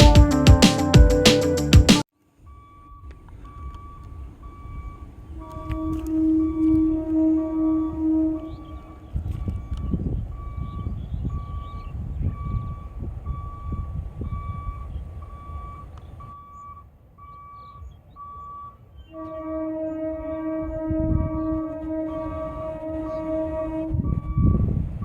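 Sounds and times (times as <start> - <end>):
train horn long blast: 5.3 - 9.1, 19.1 - 24.2
electronic warning beeps: 9.3 - 18.8, 24.0 - 25.0.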